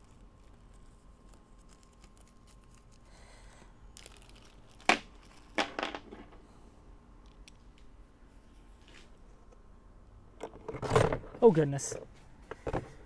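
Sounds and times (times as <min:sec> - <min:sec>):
packaging crinkling: 0:00.0 - 0:05.7.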